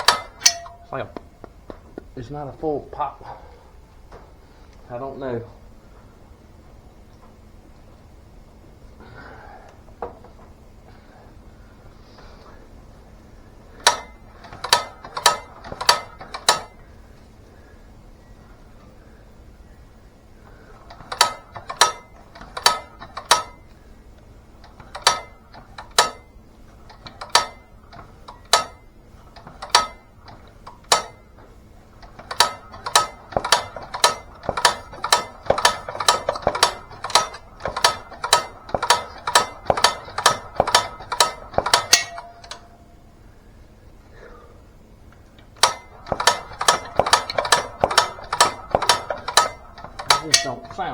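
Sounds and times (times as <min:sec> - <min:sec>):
engine turning over clicking: 0:00.0 - 0:00.8, 0:13.8 - 0:16.8, 0:20.7 - 0:42.7, 0:45.1 - 0:50.9.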